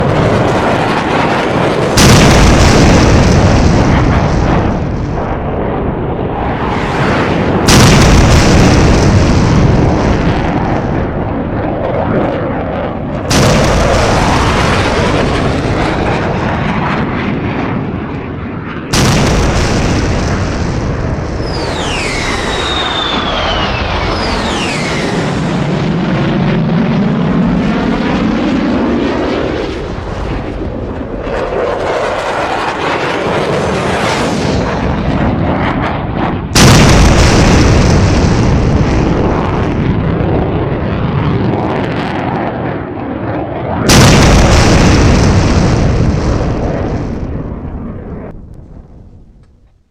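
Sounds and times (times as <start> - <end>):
explosions rumbling: 0.0 - 43.1, 43.7 - 49.9
whistling tones gliding downward: 21.4 - 25.2.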